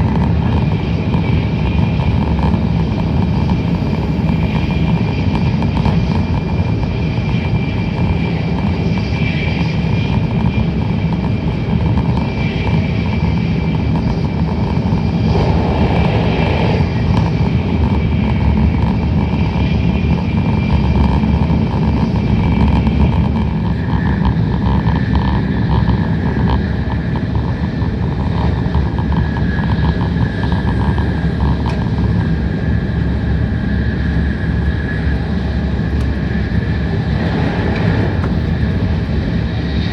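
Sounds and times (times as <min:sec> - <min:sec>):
train rumble of wheels and air: 0:00.0 - 0:39.9
faint high whine: 0:13.5 - 0:18.5.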